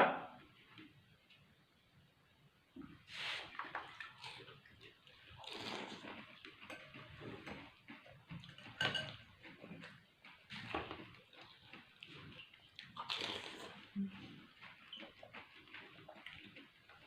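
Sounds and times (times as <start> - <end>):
slurping liquid: 3.1 - 7.8, 10.5 - 17.0
chewing: 3.9 - 17.0
food crunching: 4.1 - 17.0.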